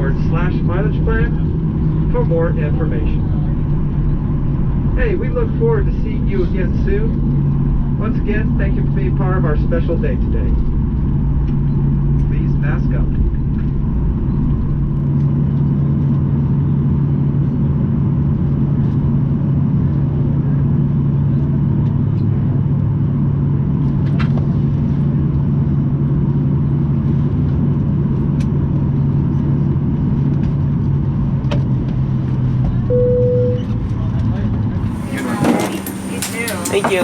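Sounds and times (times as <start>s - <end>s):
airplane cabin drone: 0.0s - 37.0s
brief single tone: 32.9s - 33.8s.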